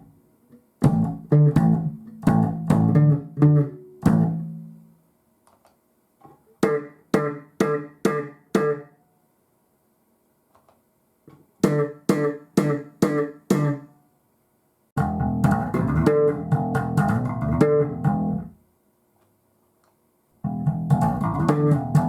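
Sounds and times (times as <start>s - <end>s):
electric bass guitar notes: 0.8s - 4.9s, 15.0s - 18.6s, 20.4s - 22.0s.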